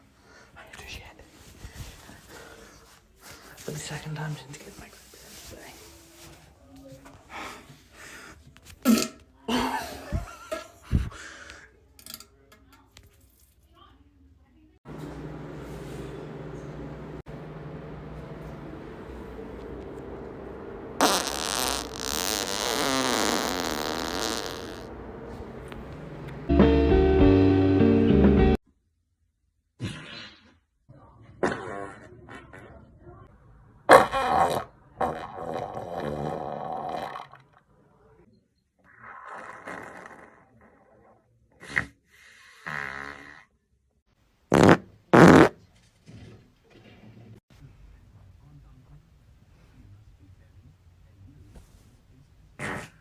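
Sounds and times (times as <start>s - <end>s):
man farting: 8.8s - 9.2s, 21.0s - 24.9s, 33.9s - 37.4s, 39.0s - 40.8s, 42.6s - 43.5s, 44.5s - 45.6s, 52.6s - 53.0s
music: 26.3s - 28.6s.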